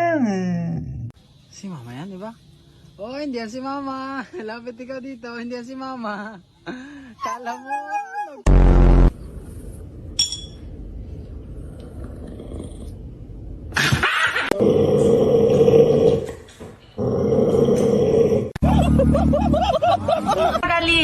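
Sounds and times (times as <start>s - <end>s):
dog growling: 11.6s - 13.1s.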